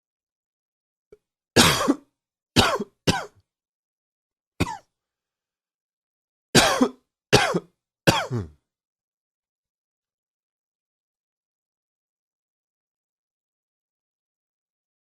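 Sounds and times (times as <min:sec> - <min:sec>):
man coughing: 0:01.6 - 0:02.0, 0:06.6 - 0:08.6.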